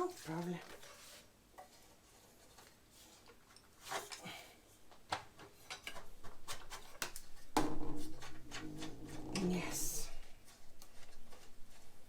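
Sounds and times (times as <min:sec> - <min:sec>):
clicks and knocks of parts handled: 0:04.9 - 0:07.5.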